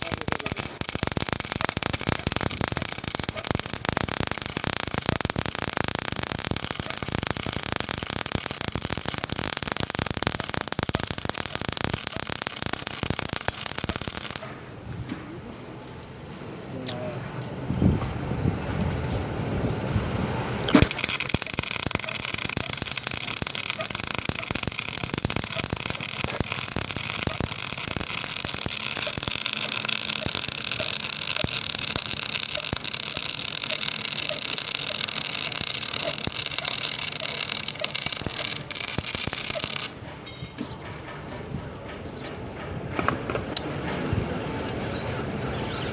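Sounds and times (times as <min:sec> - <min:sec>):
welding arc crackling: 0:00.0 - 0:14.6, 0:20.5 - 0:40.0.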